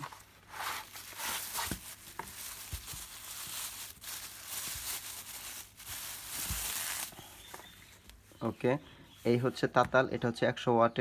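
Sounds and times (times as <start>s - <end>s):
packaging rustling and crinkling: 0.0s - 8.4s.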